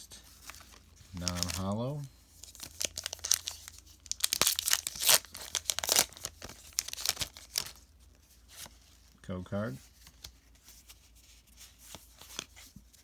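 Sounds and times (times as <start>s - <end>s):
foil wrapper tearing and crinkling: 0.5s - 7.8s.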